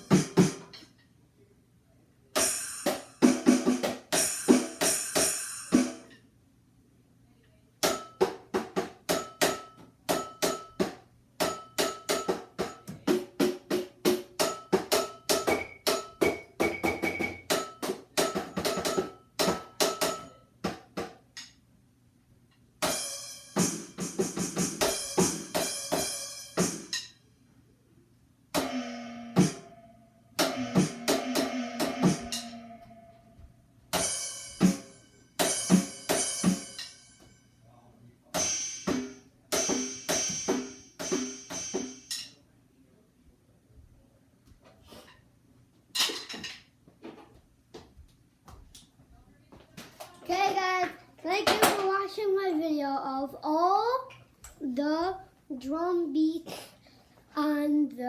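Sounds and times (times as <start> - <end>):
electronic drum beats: 0.0 - 0.8, 2.4 - 6.0, 12.2 - 19.8, 22.8 - 27.0, 28.6 - 29.8, 30.4 - 33.0, 38.4 - 42.1
cymbal-like hits: 28.6 - 37.3, 38.4 - 42.2.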